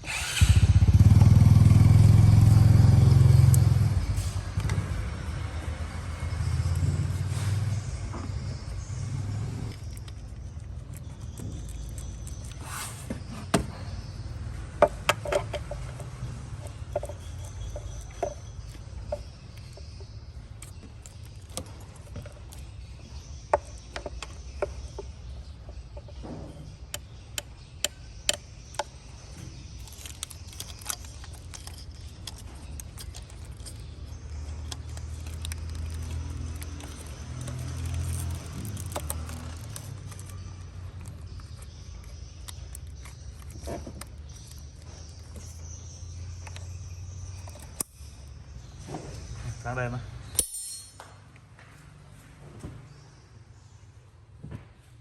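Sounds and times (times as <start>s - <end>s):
hand tools clinking on metal: 50.3s - 51.2s.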